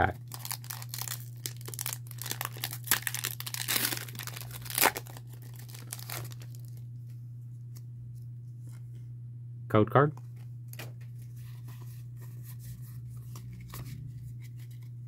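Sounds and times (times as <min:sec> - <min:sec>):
foil wrapper tearing and crinkling: 0:00.0 - 0:06.8
steady low hum: 0:00.0 - 0:15.0
loud foil rip: 0:00.3 - 0:06.7.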